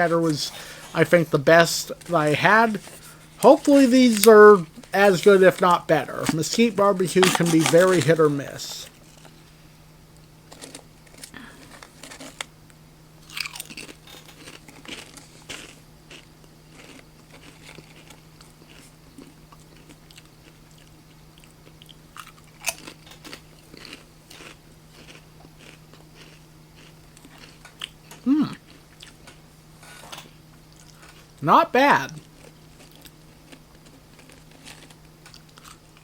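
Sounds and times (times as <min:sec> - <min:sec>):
crisps being crunched: 0:00.0 - 0:08.9, 0:10.5 - 0:12.5, 0:13.2 - 0:21.0, 0:32.2 - 0:36.0
steady low hum: 0:00.0 - 0:14.0
short vocal sound: 0:28.2 - 0:28.6.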